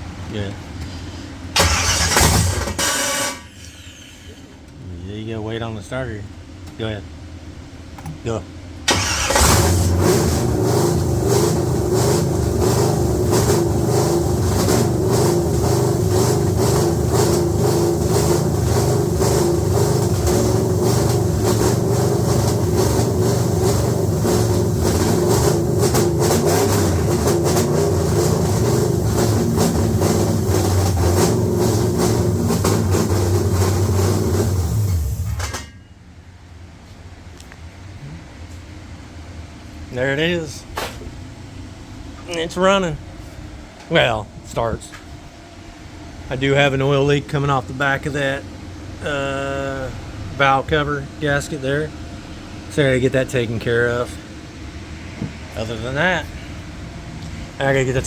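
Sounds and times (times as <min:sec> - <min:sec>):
car engine running roughly: 0:01.1 - 0:04.0, 0:08.9 - 0:35.7
engine rattle at shutdown: 0:01.5 - 0:04.4, 0:08.9 - 0:35.8.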